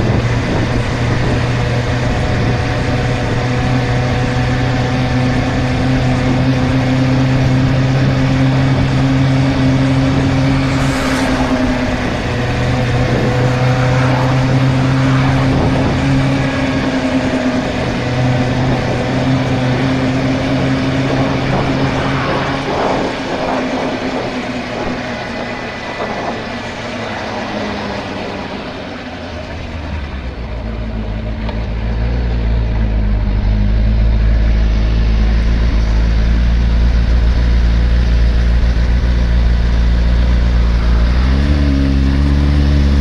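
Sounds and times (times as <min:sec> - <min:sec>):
wind and road noise: 0:00.0 - 0:43.0
motorcycle engine running: 0:27.4 - 0:43.0.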